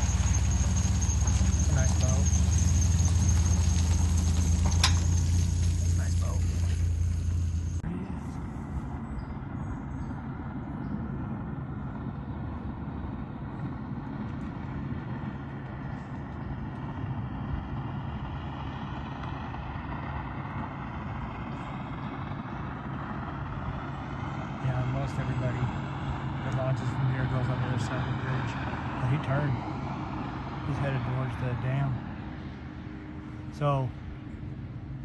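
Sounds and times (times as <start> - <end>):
boat engine running: 0.0 - 18.3.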